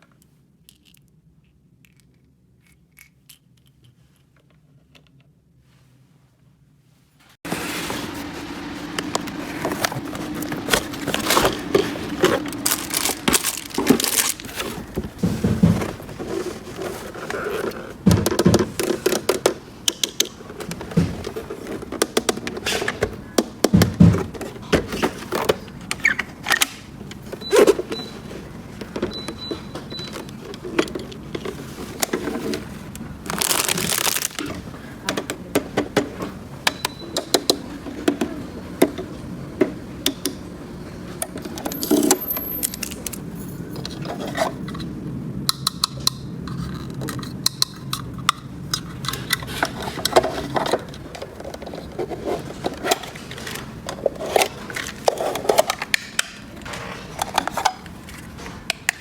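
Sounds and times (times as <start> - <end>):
plastic wrap rustle: 7.2 - 18.0, 31.4 - 34.6.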